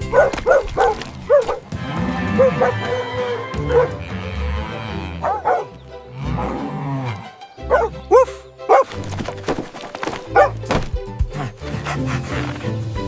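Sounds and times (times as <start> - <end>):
cartoon dog barking and yipping: 0.0 - 1.6, 2.3 - 4.0, 5.2 - 5.7, 7.6 - 9.0, 10.3 - 10.6
background music: 0.0 - 13.0
thuds: 9.0 - 11.2.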